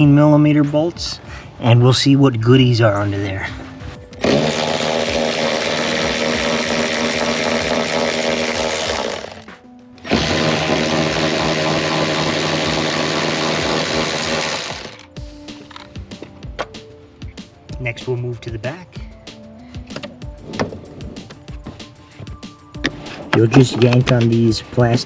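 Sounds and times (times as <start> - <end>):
power tool undoing bolts: 4.2 - 15.9.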